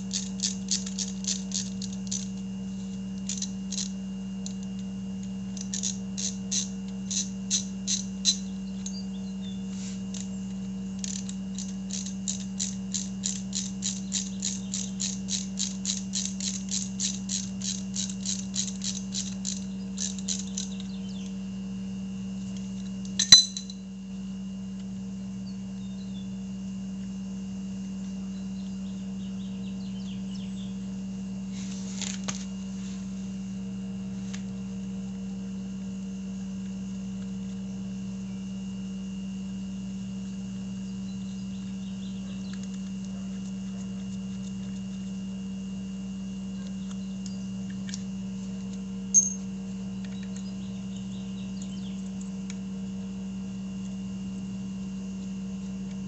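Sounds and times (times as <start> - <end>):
steady low hum: 0.0 - 56.0
metal tools clinking: 23.2 - 23.8, 49.1 - 49.4.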